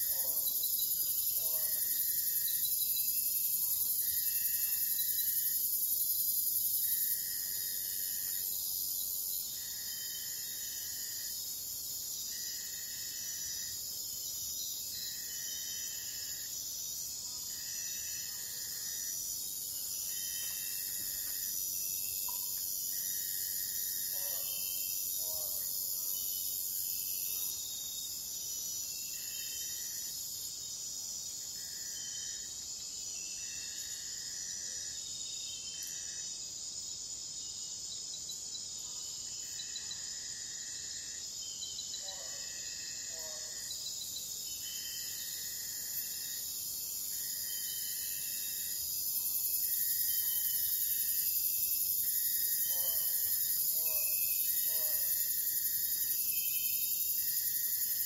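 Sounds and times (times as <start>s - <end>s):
lower insect trill bursts: 0.0s - 10.1s, 43.8s - 58.0s
insects trilling: 0.0s - 58.0s.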